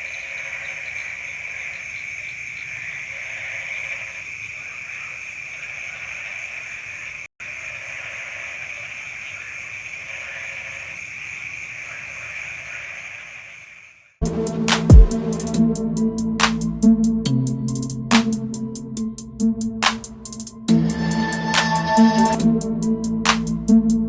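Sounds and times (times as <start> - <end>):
high-pitched trilling of night animals: 20.7 - 23.2.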